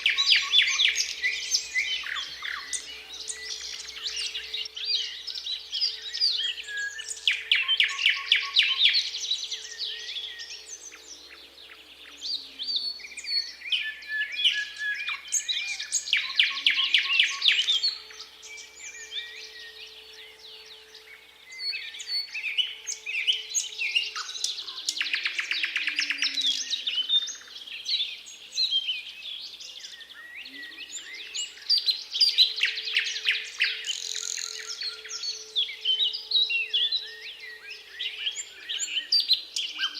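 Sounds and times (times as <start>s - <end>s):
nightingale singing: 0.0s - 39.9s.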